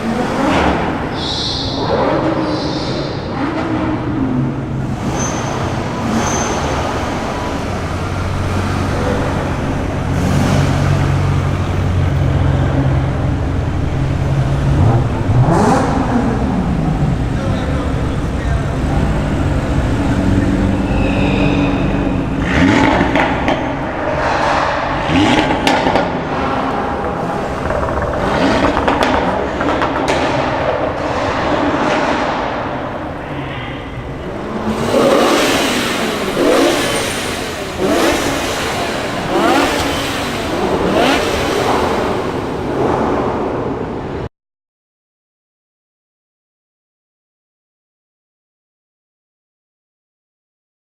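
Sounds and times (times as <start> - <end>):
car engine idling and revving: 0.0 - 44.3.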